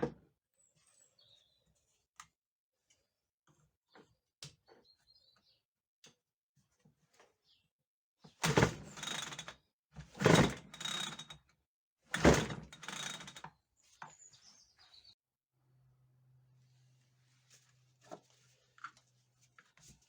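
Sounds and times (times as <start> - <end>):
starter cord pulled rasping: 8.4 - 9.5, 10.1 - 11.4, 12.1 - 13.5
bird chirp: 13.8 - 15.2.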